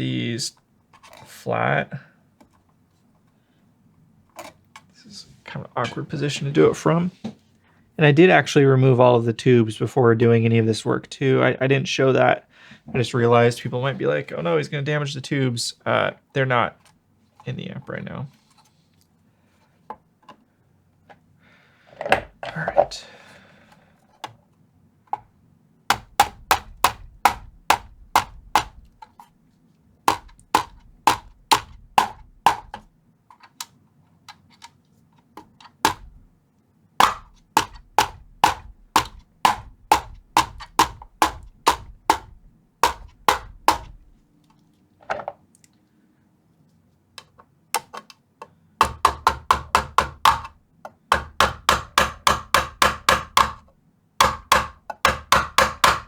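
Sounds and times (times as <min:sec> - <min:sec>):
hammer tapping on screwdriver: 0:25.9 - 0:29.0, 0:30.1 - 0:32.9, 0:35.8 - 0:36.2, 0:37.0 - 0:44.0, 0:48.8 - 0:56.0.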